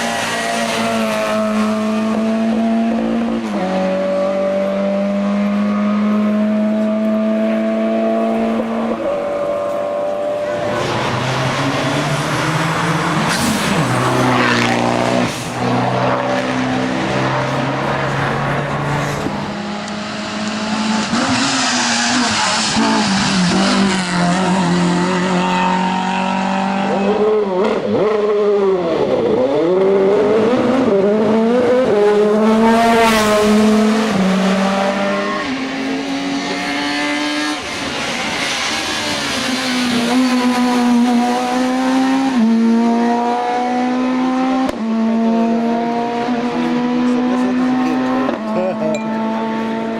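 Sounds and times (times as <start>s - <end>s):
race car engines at full throttle: 0.0s - 49.9s
car passing close by: 10.2s - 27.5s, 29.8s - 49.9s.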